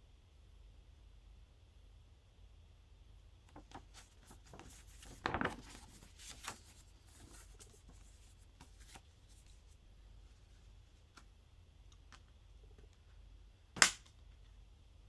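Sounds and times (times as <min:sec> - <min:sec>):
hands rubbing packaging: 0:03.6 - 0:09.8.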